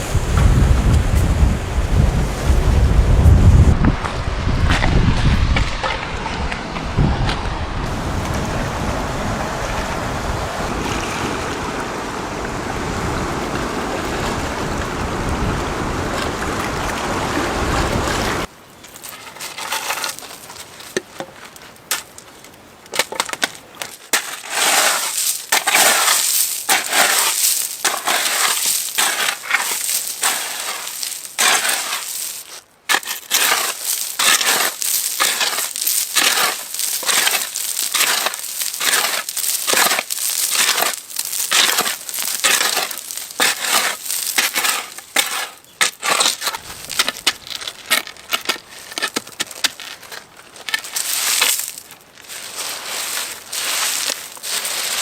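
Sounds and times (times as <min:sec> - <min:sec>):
steady rushing noise: 0:00.0 - 0:18.5
crunching and rustling: 0:18.7 - 0:55.0.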